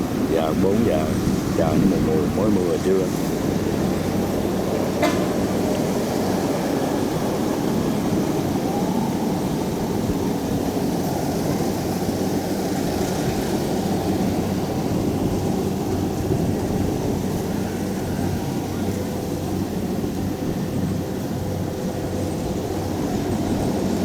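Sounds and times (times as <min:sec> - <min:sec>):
broad rushing noise: 0:00.0 - 0:08.4
diesel engine humming: 0:00.0 - 0:24.0.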